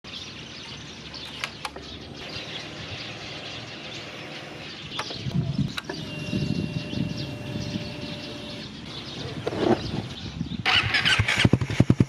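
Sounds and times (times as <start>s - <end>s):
birds chirping: 0.0s - 12.0s
sharp clicks: 1.2s - 1.9s, 4.9s - 6.1s
low steady hum: 2.2s - 9.0s.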